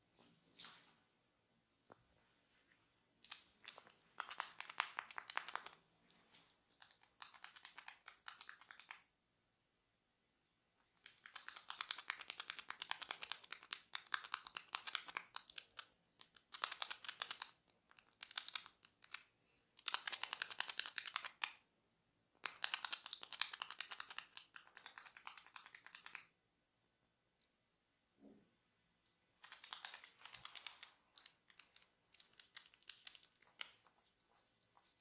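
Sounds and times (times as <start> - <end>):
crackly scratching near ear: 29.4 - 35.0.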